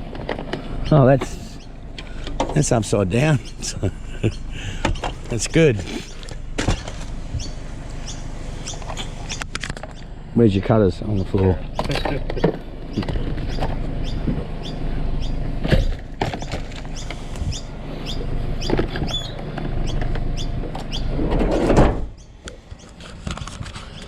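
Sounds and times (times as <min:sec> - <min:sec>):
bird chirps: 0:00.6 - 0:01.8, 0:03.2 - 0:05.2, 0:05.9 - 0:10.2, 0:11.8 - 0:21.1
sliding door shutting: 0:21.1 - 0:22.1.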